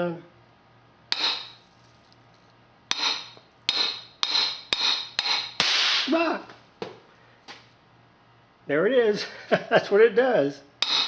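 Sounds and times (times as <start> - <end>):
hammer blows on steel vise: 1.1 - 1.6, 2.9 - 6.2, 10.8 - 11.0
man exclaiming: 6.0 - 6.5.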